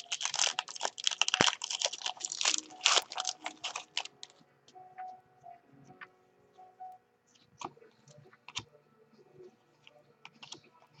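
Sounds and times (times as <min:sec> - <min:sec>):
card packs crinkling: 0:00.0 - 0:04.4.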